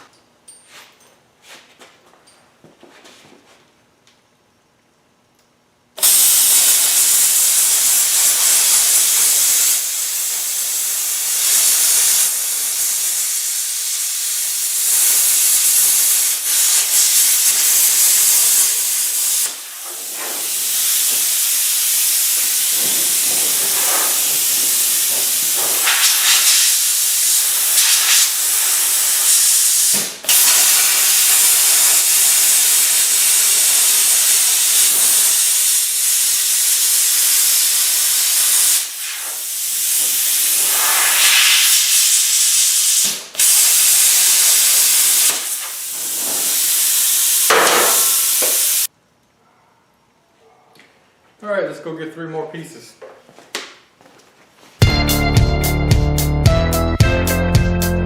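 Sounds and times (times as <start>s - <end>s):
plasma torch hissing: 6.0s - 48.9s.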